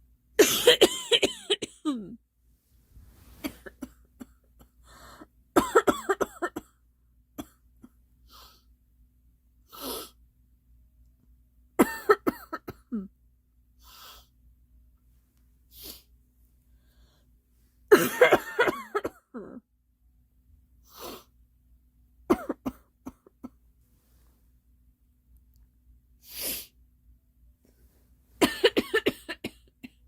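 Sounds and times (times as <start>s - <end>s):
girl coughing: 0.4s - 2.2s, 5.6s - 6.7s, 11.8s - 13.1s, 17.9s - 19.6s, 22.3s - 23.3s, 28.4s - 30.0s.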